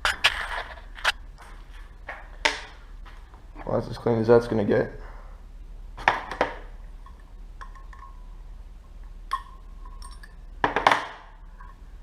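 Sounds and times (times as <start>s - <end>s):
metal parts clinking: 9.3s - 10.4s.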